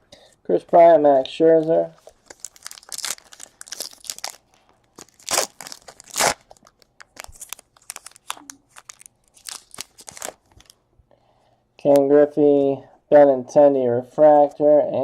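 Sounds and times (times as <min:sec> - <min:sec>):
card pack wrappers tearing and crinkling: 0:02.0 - 0:10.8.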